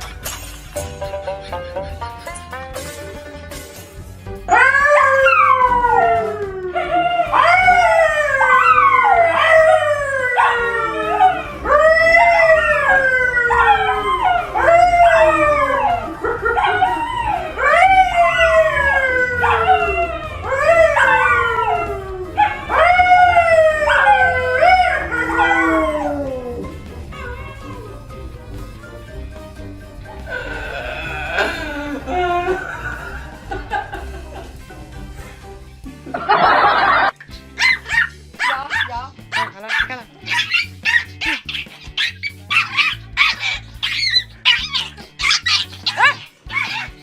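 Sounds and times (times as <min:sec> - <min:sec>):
dog howling: 0:04.5 - 0:28.4, 0:30.2 - 0:33.4, 0:40.3 - 0:47.0.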